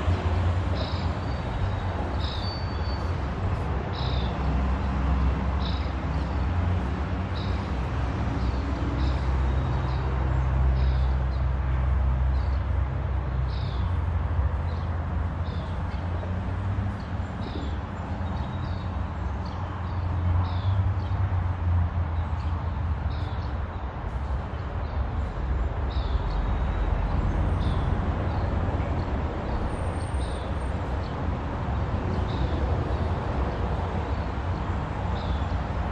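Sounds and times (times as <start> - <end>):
small birds chirping: 3.9 - 4.4, 5.6 - 6.4, 7.3 - 7.8, 8.4 - 10.0, 14.6 - 21.2.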